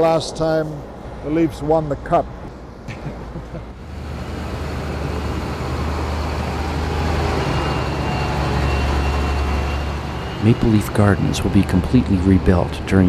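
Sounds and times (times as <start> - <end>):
heavy vehicle engine rumble: 0.1 - 13.0.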